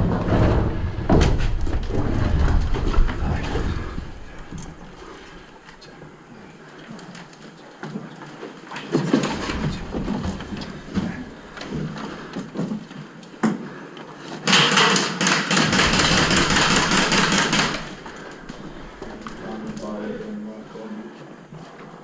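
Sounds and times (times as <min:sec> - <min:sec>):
airsoft gun firing full auto: 0:14.5 - 0:18.0
gear clicking and rattling: 0:15.5 - 0:19.9.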